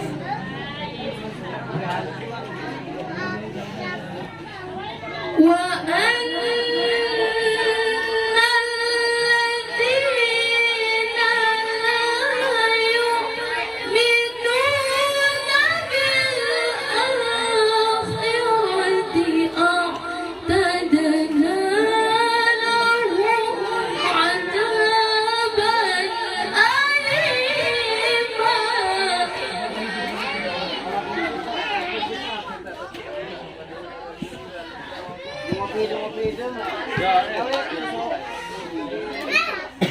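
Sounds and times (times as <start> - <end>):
woman reciting melodically: 4.4 - 31.7.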